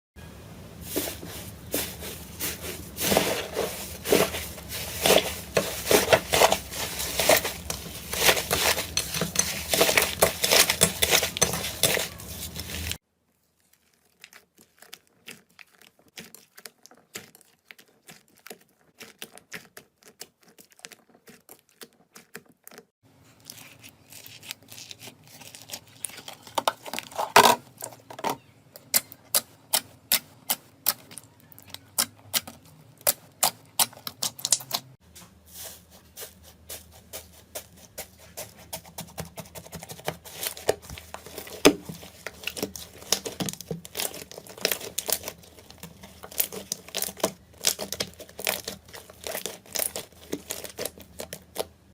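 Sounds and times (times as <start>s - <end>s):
slime crackling and popping: 40.4s - 51.7s.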